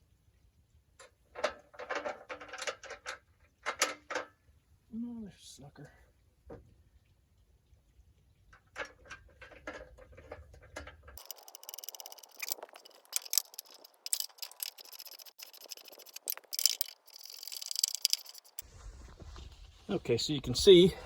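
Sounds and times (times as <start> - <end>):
small metal clicks of hand tools: 10.8 - 18.6
metal scraping: 11.1 - 18.6.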